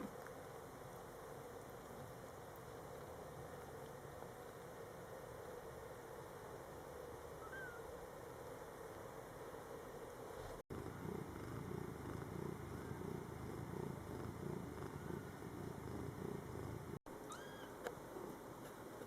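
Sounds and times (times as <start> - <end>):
kitten squeaks: 7.4 - 7.8, 17.2 - 17.8
cat purring: 10.3 - 17.1.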